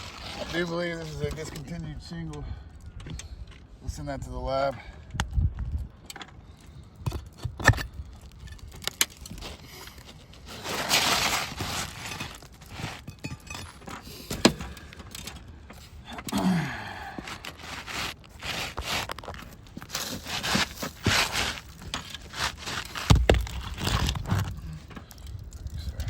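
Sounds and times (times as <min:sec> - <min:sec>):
roof shingles scraping and crackling: 0:00.0 - 0:01.8, 0:07.2 - 0:16.0, 0:16.9 - 0:26.0.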